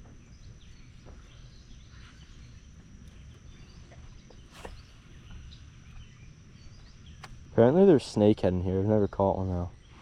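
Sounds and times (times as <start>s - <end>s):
faint chirps: 0.0s - 10.0s
insect drone: 0.0s - 10.0s.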